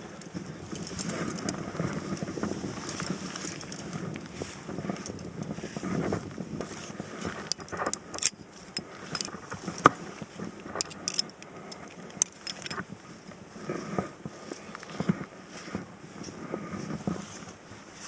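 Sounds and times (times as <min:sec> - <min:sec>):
metal climbing gear clinking: 0:00.0 - 0:05.7, 0:06.8 - 0:13.0.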